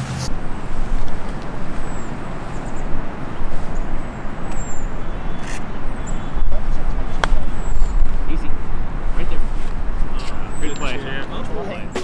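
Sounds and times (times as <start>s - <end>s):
wind buffeting microphone: 0.0s - 11.4s.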